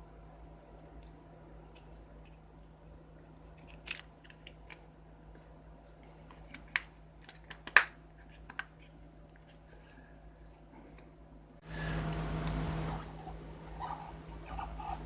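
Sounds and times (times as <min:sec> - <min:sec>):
faint steady hum: 0:00.0 - 0:15.0
small parts clicking: 0:03.4 - 0:04.9.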